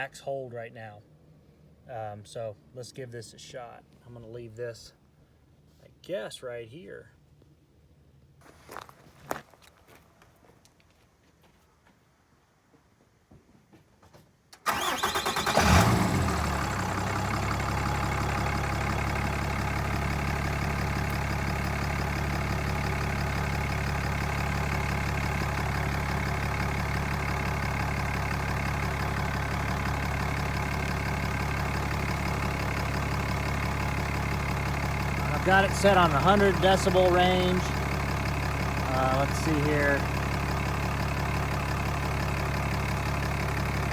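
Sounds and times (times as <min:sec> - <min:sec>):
truck engine starting and idling: 0:14.5 - 0:43.9.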